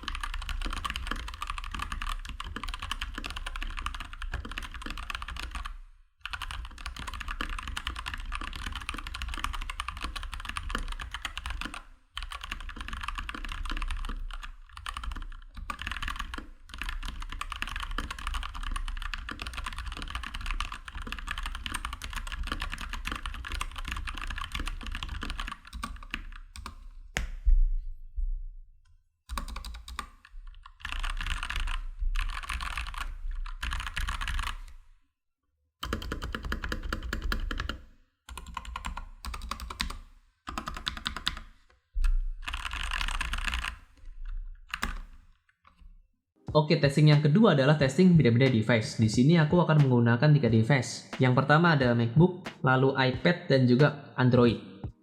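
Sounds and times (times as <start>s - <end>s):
mechanical keyboard typing: 0.0s - 26.9s, 29.3s - 34.8s, 35.8s - 41.5s, 42.4s - 43.9s, 44.7s - 45.8s.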